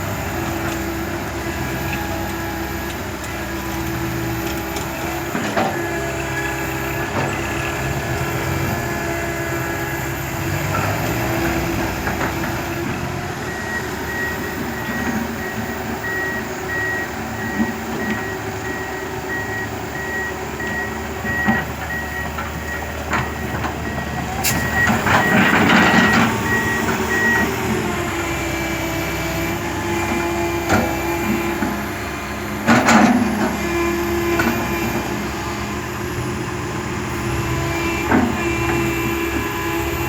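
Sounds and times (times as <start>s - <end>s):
diesel engine running: 0.0s - 40.0s
reverse warning beeper: 13.5s - 27.6s.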